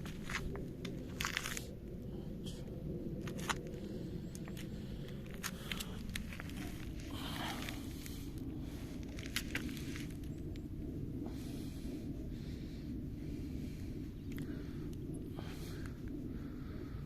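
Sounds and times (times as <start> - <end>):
footsteps on dry ground: 0.0 - 1.6, 4.5 - 10.3
steady low rumble: 0.0 - 17.0.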